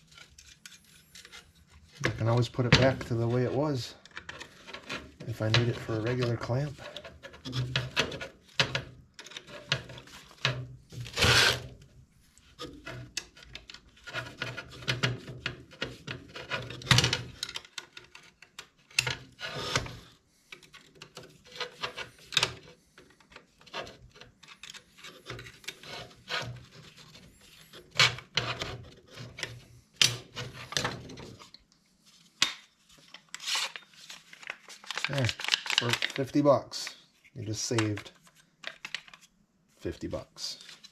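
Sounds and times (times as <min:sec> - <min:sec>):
parts scraping: 0:00.0 - 0:39.3
metal and plastic parts clicking: 0:04.0 - 0:11.6, 0:12.5 - 0:19.9, 0:20.5 - 0:31.7, 0:32.4 - 0:37.0.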